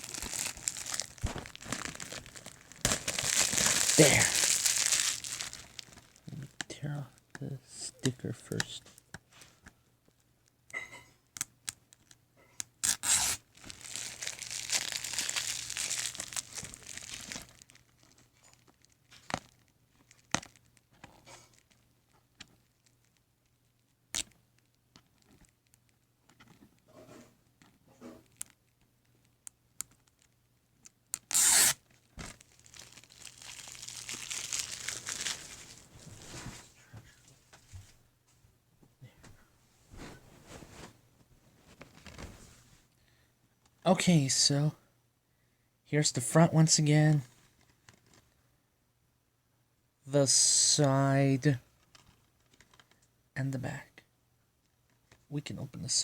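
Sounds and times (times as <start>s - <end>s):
plastic wrapping tearing and crinkling: 0.0s - 6.4s, 12.8s - 20.6s, 31.2s - 36.5s.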